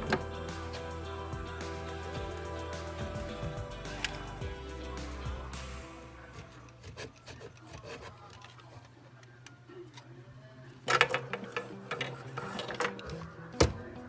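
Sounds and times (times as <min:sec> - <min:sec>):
plastic parts clicking and rubbing: 0:06.4 - 0:10.1, 0:10.9 - 0:13.3.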